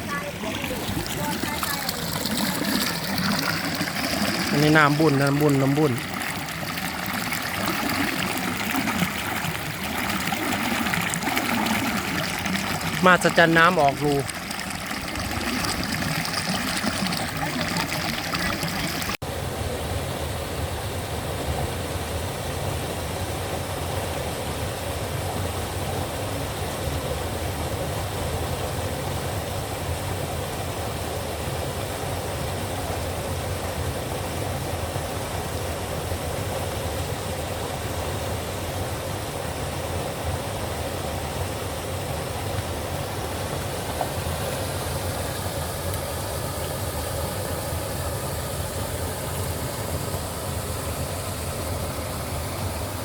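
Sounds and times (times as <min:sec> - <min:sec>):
water running and trickling: 0:00.0 - 0:19.2, 0:42.4 - 0:53.0.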